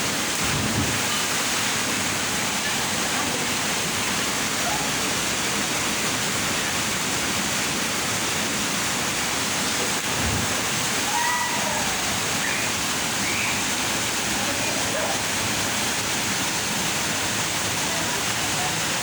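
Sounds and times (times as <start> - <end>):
waterfall rushing into pool: 0.0 - 19.0
dull low thump: 0.4 - 1.1, 10.1 - 10.7.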